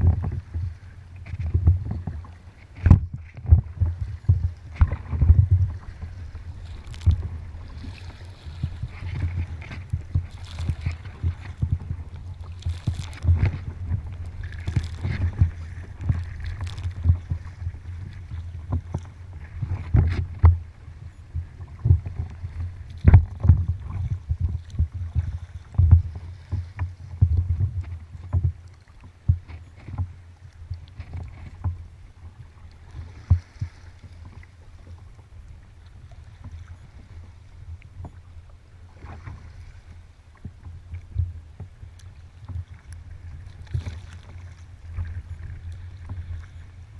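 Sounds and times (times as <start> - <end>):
water slapping against kayak hull: 0.0 - 46.9.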